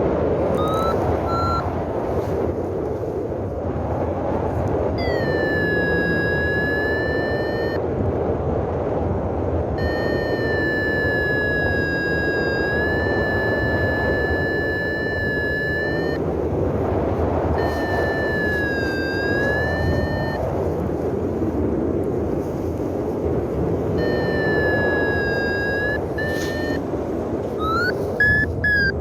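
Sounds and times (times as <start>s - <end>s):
wind rushing over microphone: 0.0s - 29.0s
variometer sink tone: 0.5s - 1.7s, 5.0s - 7.8s, 9.8s - 16.2s, 17.6s - 20.5s, 24.0s - 26.9s, 27.6s - 29.0s.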